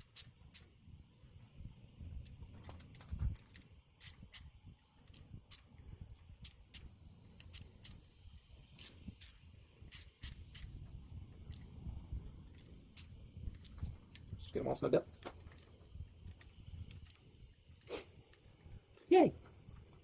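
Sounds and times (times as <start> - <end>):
screwdriver and screws clicking: 0.0 - 0.7, 2.2 - 5.7, 6.4 - 8.0, 8.8 - 11.8, 12.4 - 14.4, 15.1 - 18.5
low rumble of handling: 1.0 - 3.8.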